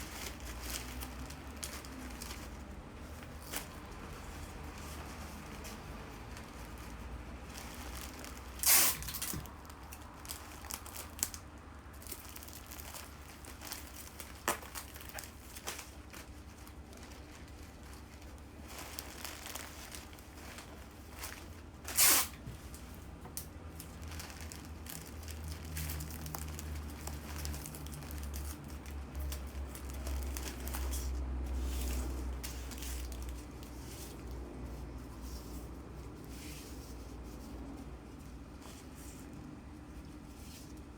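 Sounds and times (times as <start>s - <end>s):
wrapping crinkling: 0.0s - 40.9s
loud tearing of wrapping: 7.9s - 11.4s, 21.8s - 22.4s.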